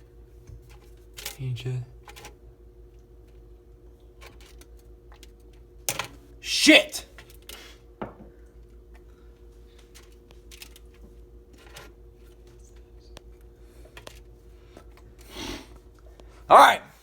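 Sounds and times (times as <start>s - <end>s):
low steady hum: 0.0s - 17.0s
light clicks and knocks of handling: 9.7s - 15.2s.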